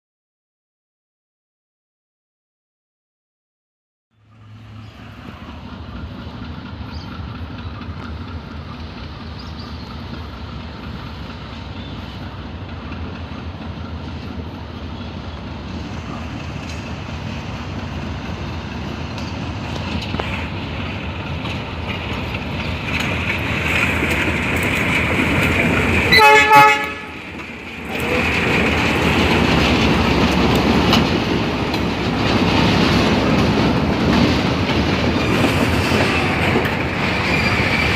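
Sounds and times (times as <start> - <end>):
diesel locomotive engine: 4.1 - 37.9
rolling train wagons: 4.2 - 37.9
locomotive horn blast: 26.1 - 27.3.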